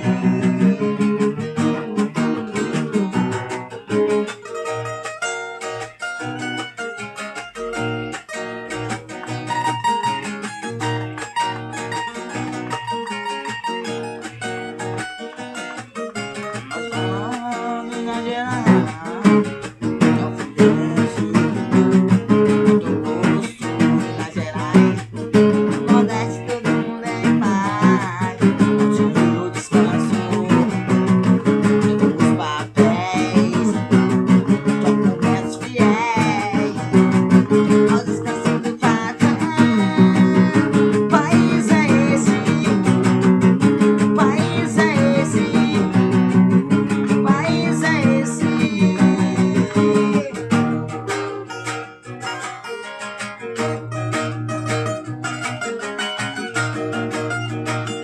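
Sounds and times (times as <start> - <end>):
acoustic guitar strummed and plucked: 0.0 - 58.0
singing or lead melody: 0.0 - 58.0.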